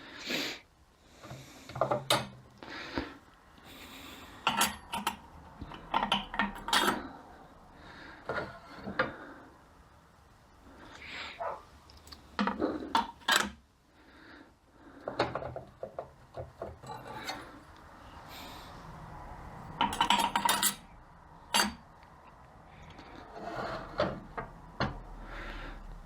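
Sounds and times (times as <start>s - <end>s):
metal parts clinking and knocking: 4.4s - 7.0s, 12.4s - 13.6s, 19.8s - 20.8s, 21.5s - 21.8s.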